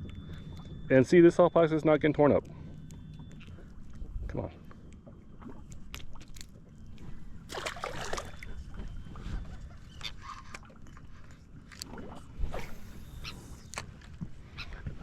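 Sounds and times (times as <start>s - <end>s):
water lapping against boat hull: 2.0s - 15.0s
sharp knocks or splashes: 7.5s - 8.4s.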